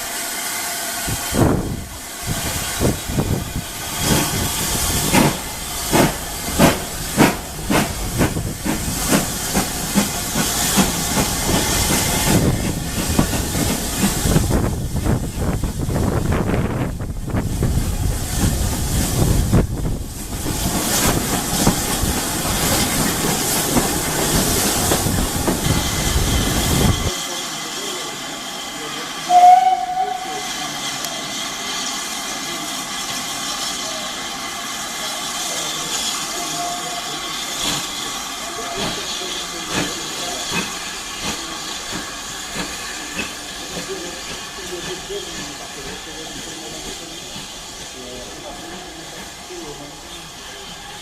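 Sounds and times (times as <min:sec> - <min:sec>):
steam locomotive hissing: 0:00.0 - 0:51.0
steam whistle blast: 0:29.3 - 0:30.6.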